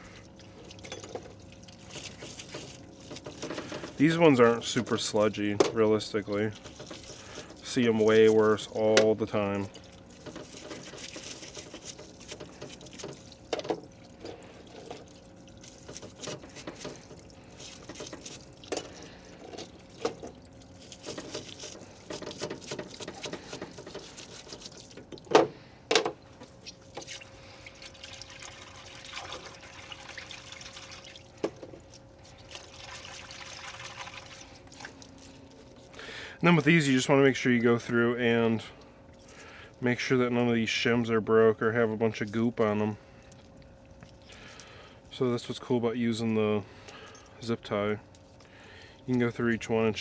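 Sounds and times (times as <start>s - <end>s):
scrubbing: 0.0s - 25.7s
liquid dripping and splashing: 0.0s - 36.7s, 38.7s - 39.9s, 42.0s - 45.1s, 46.2s - 49.4s
faint steady hum: 0.0s - 50.0s.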